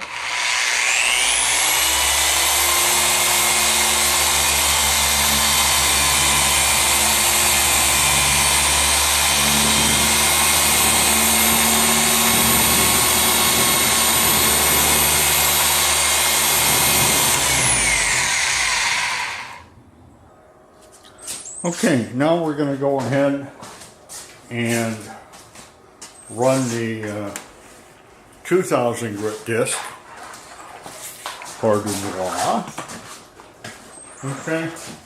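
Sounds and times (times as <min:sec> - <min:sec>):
air sander hissing and whining: 0:00.0 - 0:19.7.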